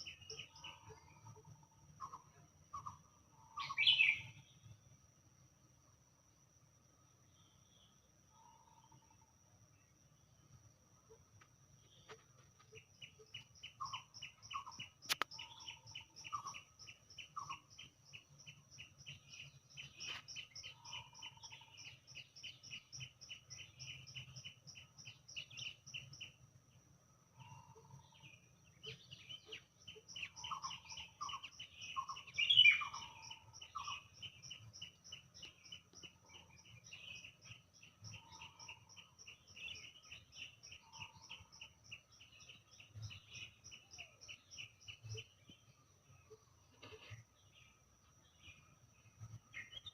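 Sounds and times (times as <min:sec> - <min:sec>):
birds singing: 0:00.0 - 0:04.9, 0:07.2 - 0:49.9
sharp click: 0:15.0 - 0:15.4.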